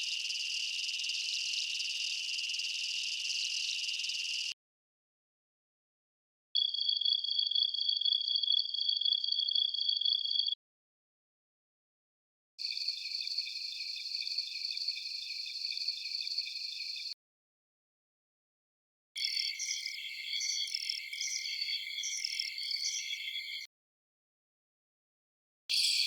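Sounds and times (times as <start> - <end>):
crickets trilling: 0.0 - 4.5, 12.6 - 17.1, 19.2 - 23.7, 25.7 - 26.0
high insect chirps: 0.0 - 4.5, 12.6 - 17.1, 19.2 - 23.7, 25.7 - 26.0.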